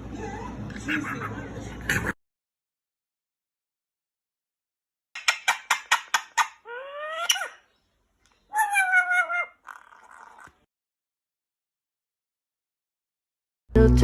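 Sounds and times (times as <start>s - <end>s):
bird chirping and calling: 5.2s - 10.4s.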